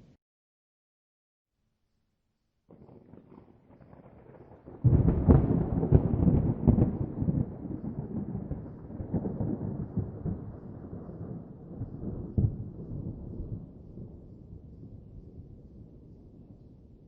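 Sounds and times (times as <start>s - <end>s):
thunderclap: 2.7s - 15.2s.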